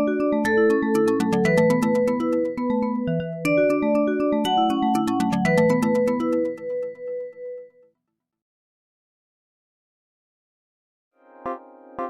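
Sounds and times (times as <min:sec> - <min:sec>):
synthesized phone ringtone: 0:00.6 - 0:02.9.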